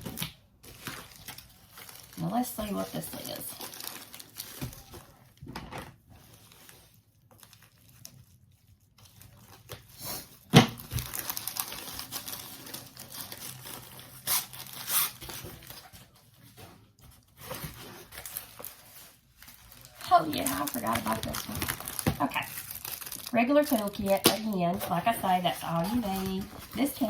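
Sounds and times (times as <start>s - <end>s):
packaging torn and crinkled: 0.0s - 5.2s, 6.3s - 15.9s, 17.4s - 24.2s.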